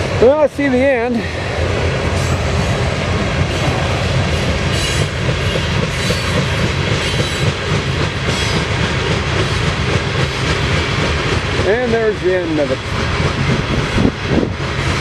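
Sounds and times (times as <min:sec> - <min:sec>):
train cars rumbling past: 0:00.0 - 0:15.0
wheels clacking over rails: 0:03.4 - 0:15.0.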